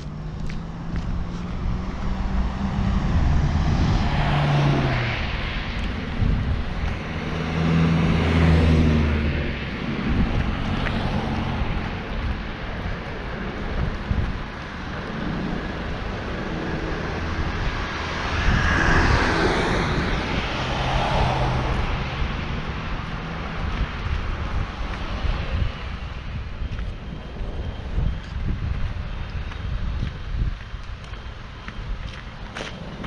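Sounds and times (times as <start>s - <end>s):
vehicle engine passing: 0.0s - 26.4s
rumbling road noise: 0.0s - 33.0s.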